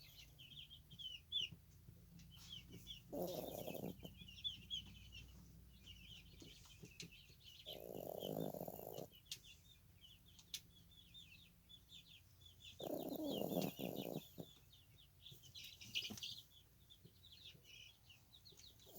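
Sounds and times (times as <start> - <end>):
birds chirping: 0.0 - 18.9
puppy snoring: 2.7 - 4.4, 7.6 - 9.3, 12.7 - 14.6.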